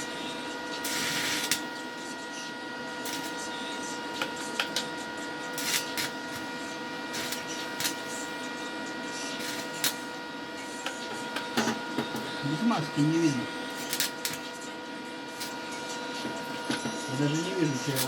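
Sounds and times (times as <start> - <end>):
steady electrical hum: 0.0 - 18.0
sharp welding pops: 0.8 - 1.7, 5.5 - 6.5, 7.1 - 8.1, 9.4 - 10.1, 13.7 - 14.4
electric arc welding crackling: 0.8 - 2.0, 3.0 - 10.3, 12.4 - 14.6, 15.3 - 15.8, 16.5 - 18.0.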